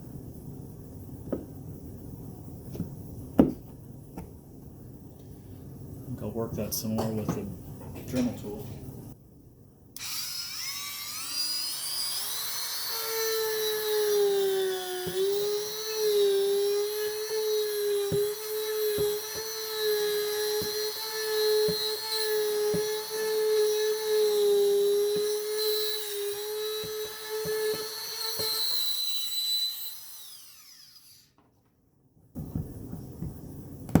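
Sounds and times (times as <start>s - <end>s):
rotary tool grinding: 10.0s - 31.3s
rotary tool high whine: 10.0s - 31.4s.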